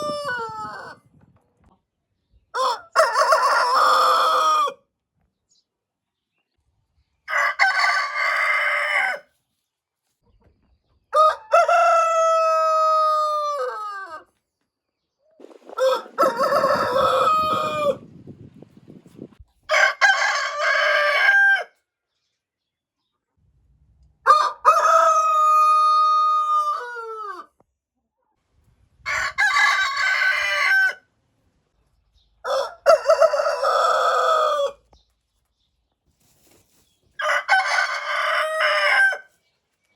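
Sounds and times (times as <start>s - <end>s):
roosters crowing: 0.0s - 1.1s, 2.6s - 4.8s, 7.3s - 9.3s, 11.1s - 14.3s, 15.4s - 18.1s, 19.7s - 21.8s, 24.2s - 27.5s, 29.1s - 31.1s, 32.4s - 34.8s, 37.2s - 39.4s.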